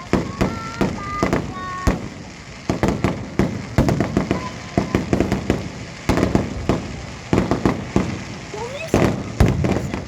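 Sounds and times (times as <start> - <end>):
fireworks bangs and booms: 0.0 - 10.0
fireworks crackling: 0.0 - 10.0.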